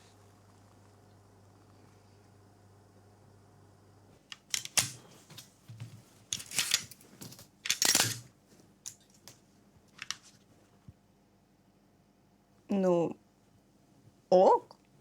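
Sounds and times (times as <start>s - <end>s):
rustles and clicks of handled objects: 4.2s - 11.0s.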